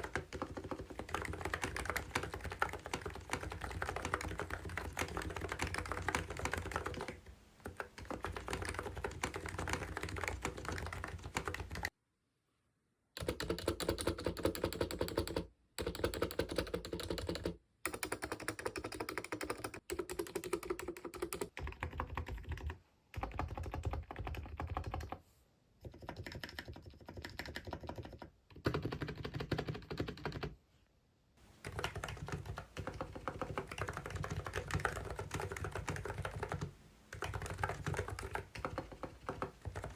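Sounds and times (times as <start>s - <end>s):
fast keyboard typing: 0.0s - 11.9s, 13.2s - 25.2s, 25.8s - 30.6s, 31.6s - 39.9s.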